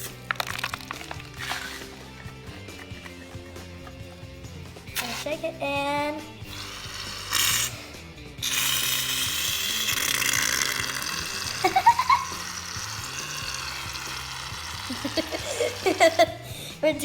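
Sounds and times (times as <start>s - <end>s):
soft background music: 0.0s - 17.0s
aerosol can spraying foam: 4.9s - 5.5s, 6.5s - 16.3s.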